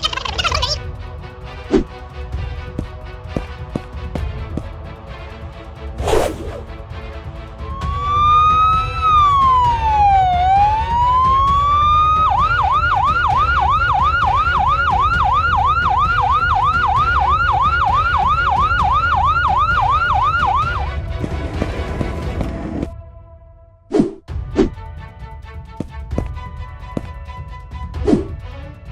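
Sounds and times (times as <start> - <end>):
police siren wailing and yelping: 7.8 - 20.9.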